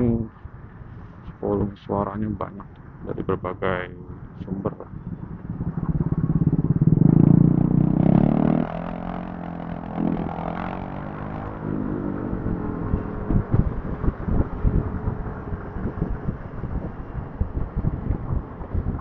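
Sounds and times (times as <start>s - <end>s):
city traffic: 0.0s - 19.0s
scooter engine running: 4.9s - 19.0s.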